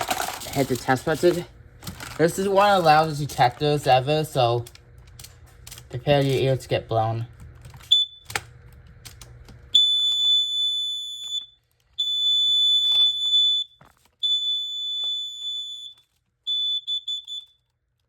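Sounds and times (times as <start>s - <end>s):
gas alarm beeping: 7.9s - 8.4s, 9.7s - 17.7s.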